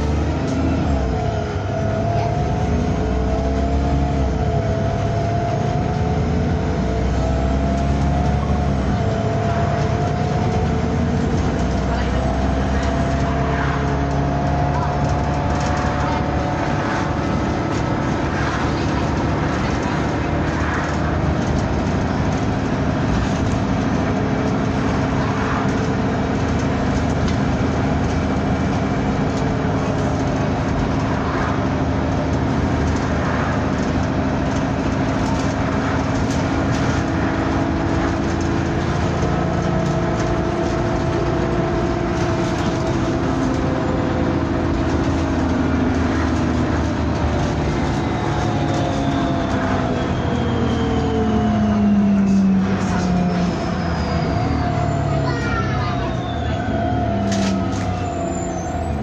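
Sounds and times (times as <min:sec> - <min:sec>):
bus engine drone with whine: 0:00.0 - 0:59.0.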